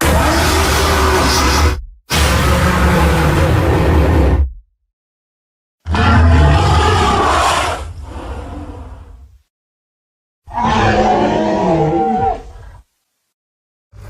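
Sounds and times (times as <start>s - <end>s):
deep creature roar: 0.0s - 4.4s, 5.9s - 9.2s, 10.5s - 12.6s.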